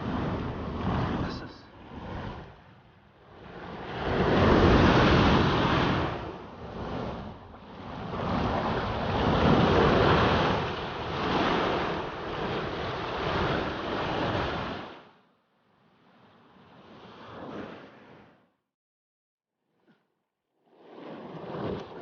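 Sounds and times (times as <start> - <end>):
surf breaking ashore: 0.0 - 15.1
wind buffeting microphone: 1.8 - 14.9.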